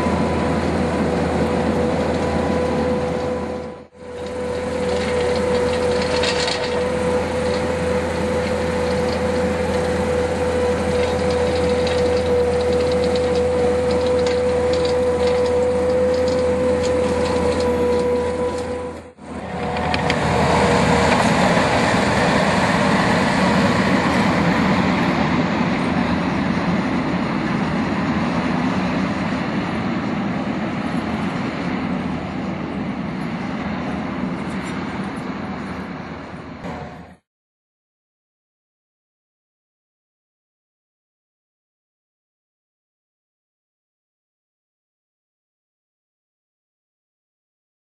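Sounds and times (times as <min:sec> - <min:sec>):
skid steer loader running: 0:00.0 - 0:37.2
steady hydraulic whine: 0:00.0 - 0:37.3.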